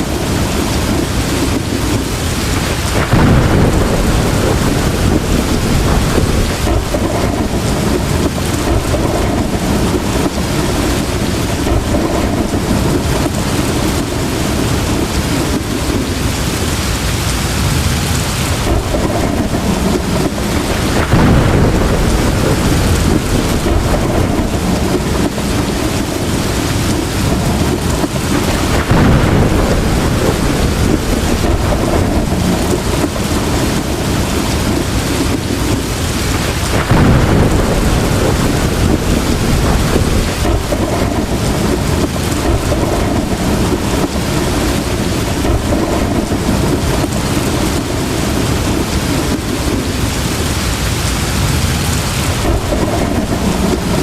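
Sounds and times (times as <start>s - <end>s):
heavy rain pouring: 0.0s - 54.0s
thunder rolling: 0.0s - 54.0s.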